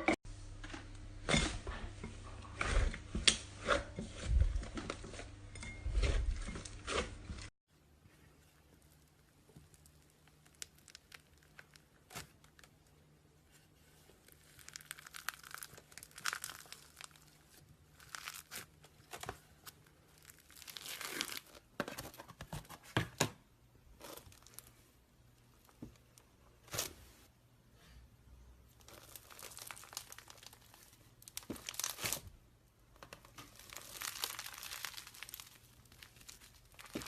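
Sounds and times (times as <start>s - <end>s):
slime crackling and popping: 9.1s - 12.8s, 14.2s - 21.6s, 28.8s - 32.3s, 33.0s - 37.0s.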